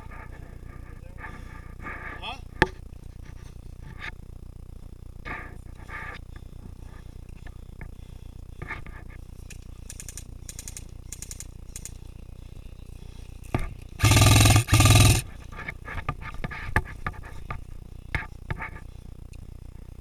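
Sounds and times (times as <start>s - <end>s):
airsoft gun full-auto bursts: 14.0s - 15.3s
distant airsoft fire: 14.0s - 15.3s.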